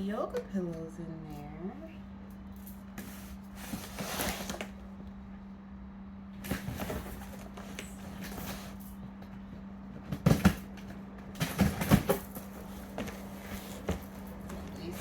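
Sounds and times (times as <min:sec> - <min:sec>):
packaging rustling and knocking: 0:10.0 - 0:15.0.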